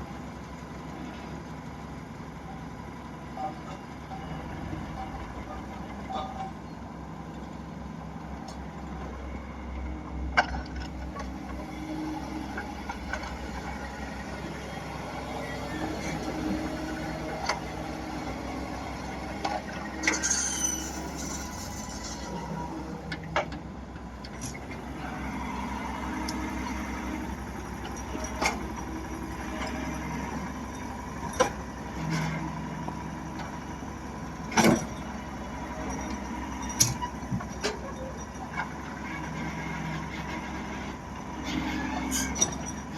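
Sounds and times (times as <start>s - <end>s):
diesel engine running: 0.0s - 42.9s
high squeal: 19.7s - 22.8s.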